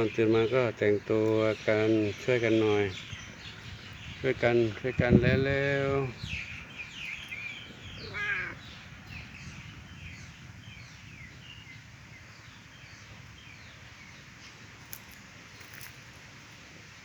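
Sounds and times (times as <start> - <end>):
birds chirping: 0.0 - 17.0
low background noise: 0.0 - 17.0
loud long bird call: 6.2 - 11.8.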